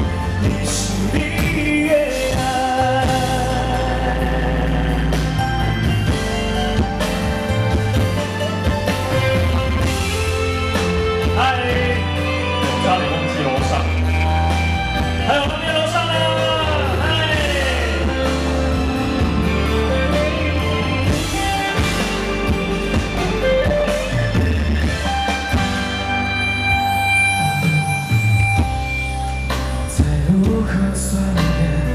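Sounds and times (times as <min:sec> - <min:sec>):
person singing: 0:00.0 - 0:06.3, 0:10.9 - 0:14.6, 0:15.2 - 0:24.4, 0:29.5 - 0:31.9
live pop-rock band: 0:00.0 - 0:31.9.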